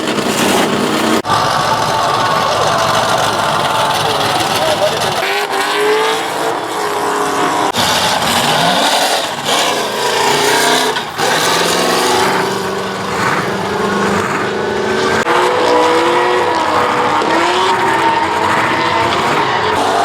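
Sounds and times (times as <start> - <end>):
car engine revving hard: 0.0 - 20.0
tyres spinning and squealing: 0.0 - 20.0.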